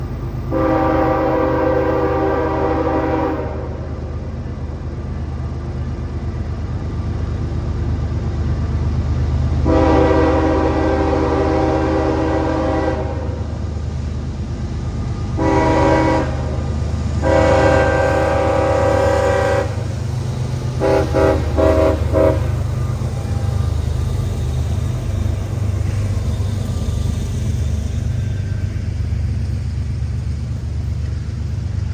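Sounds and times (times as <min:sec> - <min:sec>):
diesel engine rumble: 0:00.0 - 0:31.9
locomotive horn blasts: 0:00.5 - 0:04.1, 0:09.6 - 0:13.5, 0:15.3 - 0:20.0, 0:20.7 - 0:24.3.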